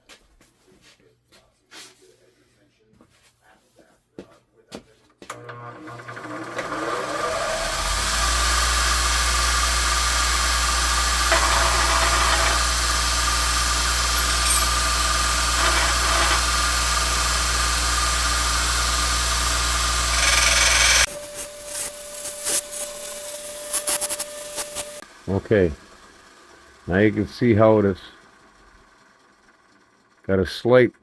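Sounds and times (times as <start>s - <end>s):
power grinder grinding steel: 5.4s - 29.0s.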